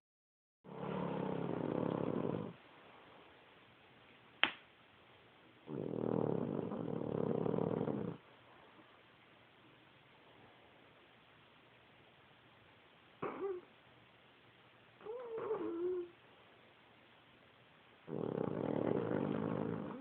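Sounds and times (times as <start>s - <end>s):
person snoring: 0.7s - 2.6s, 5.7s - 8.2s, 18.1s - 20.0s.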